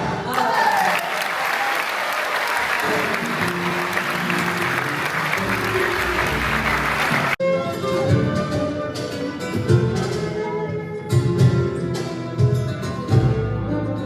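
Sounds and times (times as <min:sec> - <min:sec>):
audience applauding: 0:00.1 - 0:07.4
faint instrument notes: 0:02.9 - 0:14.0.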